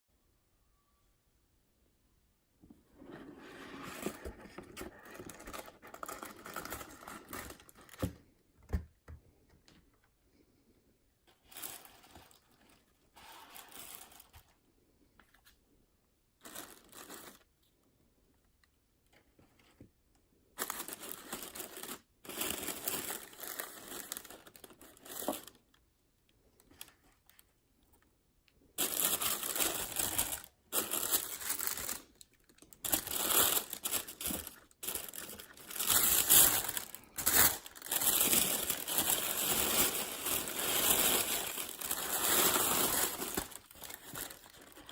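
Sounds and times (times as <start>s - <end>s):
packaging crinkling and tearing: 20.6s - 25.7s, 28.8s - 44.9s.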